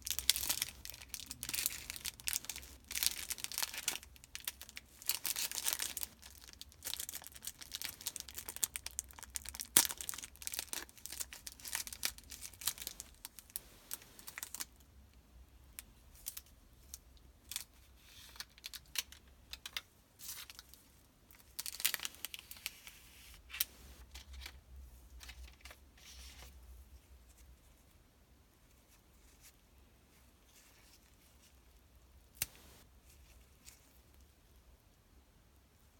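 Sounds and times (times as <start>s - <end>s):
packaging tearing and crinkling: 0.0s - 14.8s.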